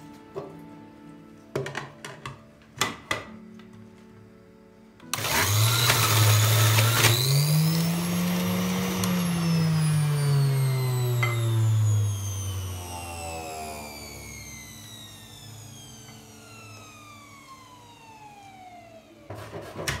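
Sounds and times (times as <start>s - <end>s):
electric blender running: 5.0s - 19.3s.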